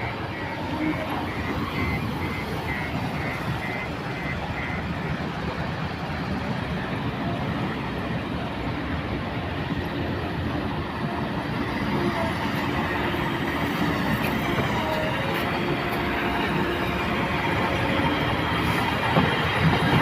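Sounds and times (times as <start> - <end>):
diesel engine rumbling: 0.0 - 20.0.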